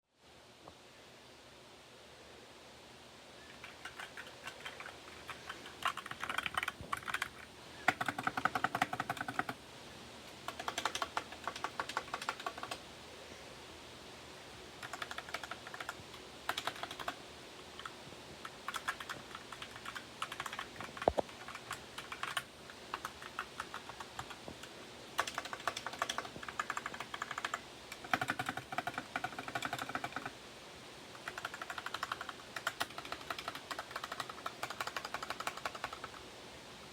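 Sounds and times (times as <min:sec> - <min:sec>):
keyboard typing: 0:03.5 - 0:09.6, 0:10.3 - 0:12.8, 0:14.8 - 0:17.2, 0:17.8 - 0:30.4, 0:31.2 - 0:36.2.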